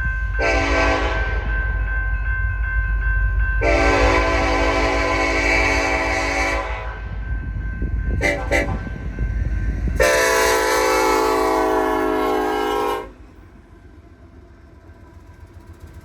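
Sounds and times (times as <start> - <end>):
passing train rumble: 0.0 - 16.0
train air horn blasts: 0.4 - 1.5, 3.6 - 7.1, 8.2 - 9.0, 10.0 - 13.2.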